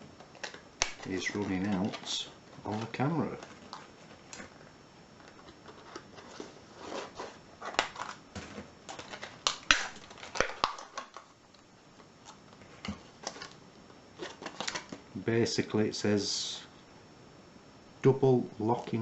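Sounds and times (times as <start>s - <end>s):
plastic packaging crackling: 0.0s - 15.1s.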